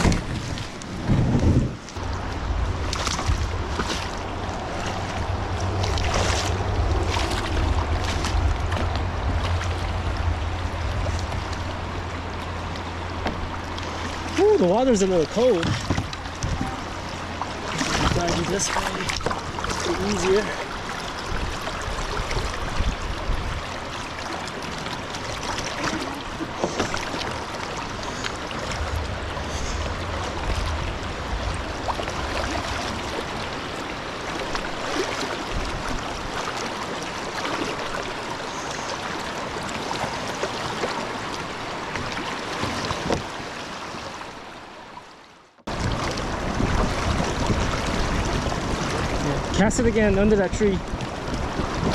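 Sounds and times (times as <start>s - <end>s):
river water running and splashing: 0.0s - 51.9s
low rumble: 1.0s - 14.6s, 28.2s - 32.8s
short splashes or knocks: 2.8s - 9.8s, 15.3s - 20.7s.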